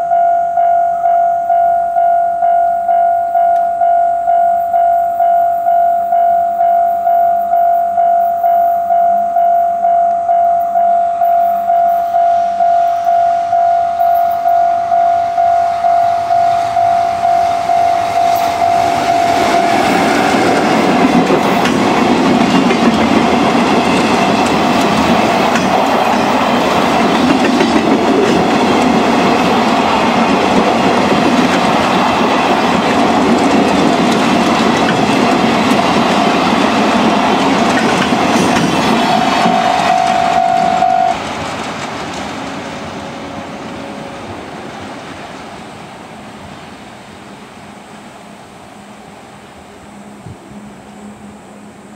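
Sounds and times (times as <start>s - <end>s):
level-crossing alarm bell: 0.0s - 21.6s, 36.4s - 41.2s
train wheels clattering over rail joints: 18.9s - 40.4s, 41.2s - 43.1s.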